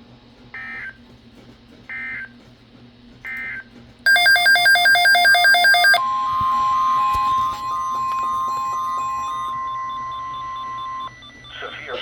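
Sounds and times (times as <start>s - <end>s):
rapidly pulsing alert tones: 4.1s - 9.5s
shrill data bursts: 4.1s - 9.8s
steady high tone: 4.1s - 11.0s.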